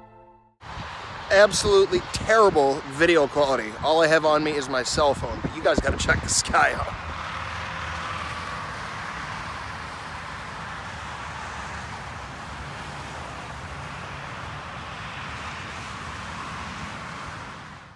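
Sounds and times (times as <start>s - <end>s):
low wind rumble on microphone: 0.6s - 13.7s.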